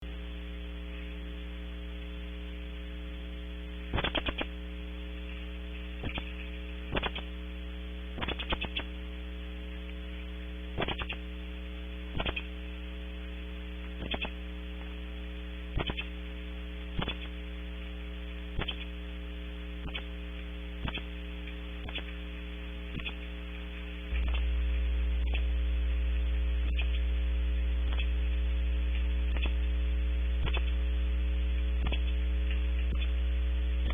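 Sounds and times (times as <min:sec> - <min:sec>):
electrical mains hum: 0:00.0 - 0:33.9
crackling clicks: 0:03.8 - 0:07.5, 0:08.1 - 0:09.1, 0:09.7 - 0:11.4, 0:12.1 - 0:33.9.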